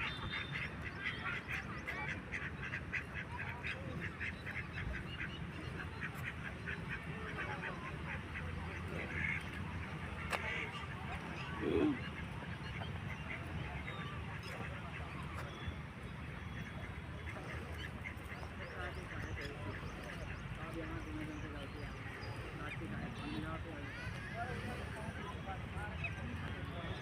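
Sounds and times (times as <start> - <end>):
waterfowl calling: 0.0 - 9.5.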